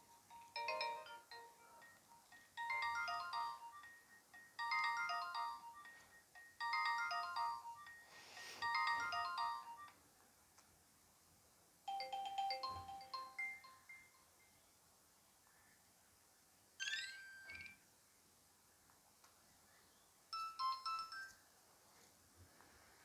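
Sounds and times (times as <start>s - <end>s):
different ringtone melody: 0.0s - 10.0s, 11.9s - 14.4s, 16.8s - 17.6s, 20.4s - 21.4s
electronic phone ringtone melody: 0.0s - 10.0s, 11.9s - 14.3s.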